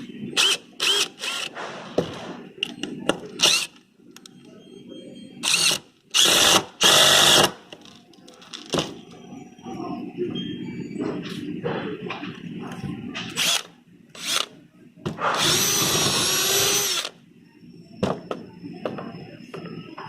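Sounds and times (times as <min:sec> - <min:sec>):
cordless drill whining: 0:00.4 - 0:01.5, 0:05.4 - 0:07.5, 0:14.2 - 0:14.5, 0:15.4 - 0:17.1.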